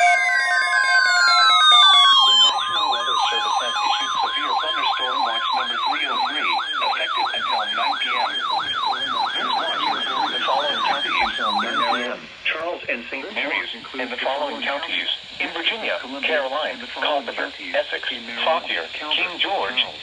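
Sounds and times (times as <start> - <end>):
electronic siren yelping: 0.0 - 12.1
steady high tone: 0.0 - 12.1.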